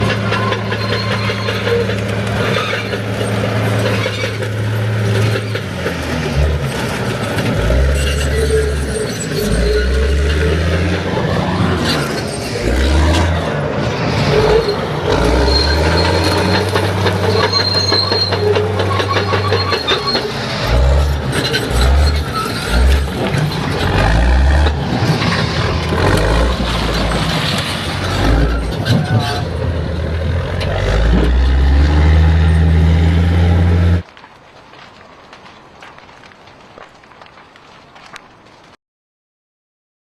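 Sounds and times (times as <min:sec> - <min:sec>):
high metallic squeals: 0:00.0 - 0:05.6, 0:07.7 - 0:13.4, 0:14.2 - 0:34.0
diesel engine running hard: 0:00.0 - 0:34.0.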